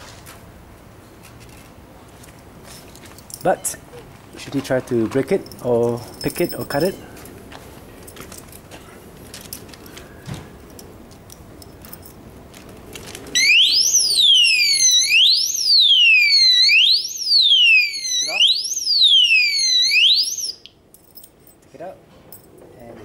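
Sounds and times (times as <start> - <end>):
alarm siren wailing: 13.4 - 20.7.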